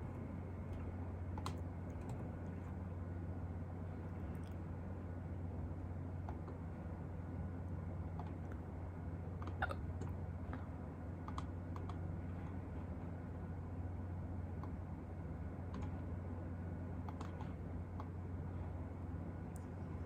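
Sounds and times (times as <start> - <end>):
steady low hum: 0.0 - 20.0
small clicks: 0.7 - 2.3, 11.2 - 12.0, 17.0 - 18.1.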